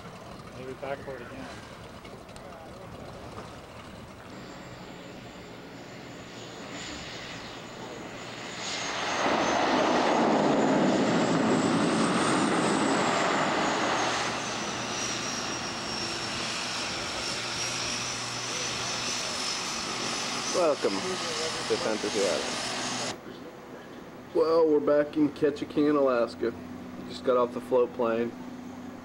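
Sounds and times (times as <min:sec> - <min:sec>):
propeller plane engine running: 0:00.0 - 0:23.2, 0:25.2 - 0:29.0
thin high whine: 0:04.2 - 0:23.2.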